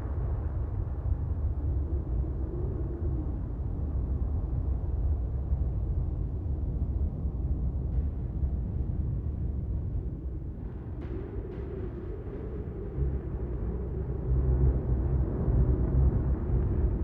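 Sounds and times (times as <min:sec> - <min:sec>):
low rumbling drone: 0:08.1 - 0:17.0.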